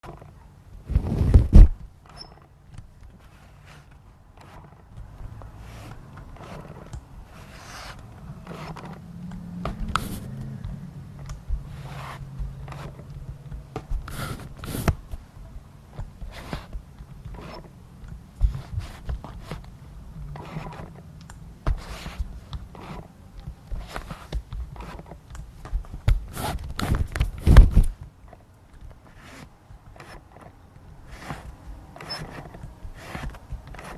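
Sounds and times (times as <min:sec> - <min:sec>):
low steady hum: 0:00.0 - 0:33.9
lens autofocus squeaking: 0:02.0 - 0:02.5, 0:17.3 - 0:17.7, 0:32.0 - 0:33.2.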